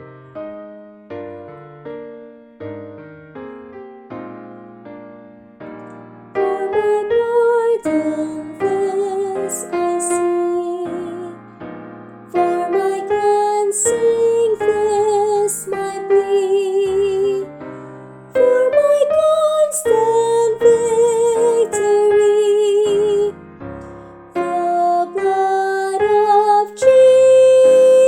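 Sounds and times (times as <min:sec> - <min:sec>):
piano accompaniment: 0:00.0 - 0:28.0
soprano singing a hymn: 0:06.4 - 0:11.6, 0:12.3 - 0:28.0.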